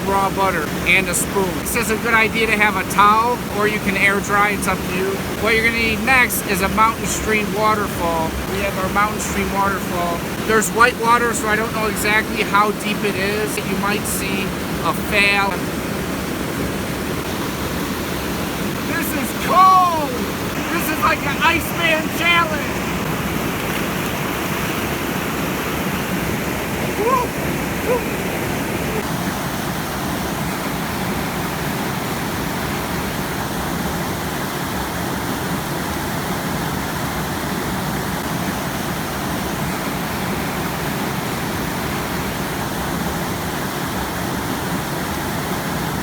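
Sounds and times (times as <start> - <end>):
waterfall rushing: 0.0 - 46.0.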